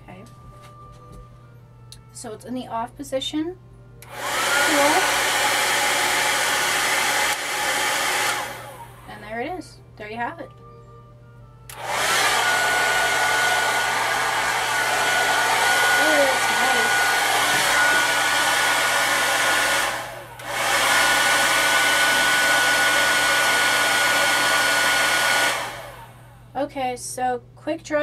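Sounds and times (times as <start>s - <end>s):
hair dryer running: 4.0s - 9.3s, 11.7s - 26.5s.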